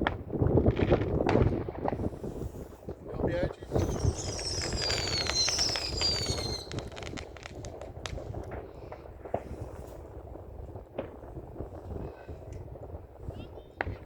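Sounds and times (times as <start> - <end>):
whistling firework: 3.5 - 10.1
firework cracks: 3.5 - 12.7
rapid crackling pops: 3.6 - 9.8.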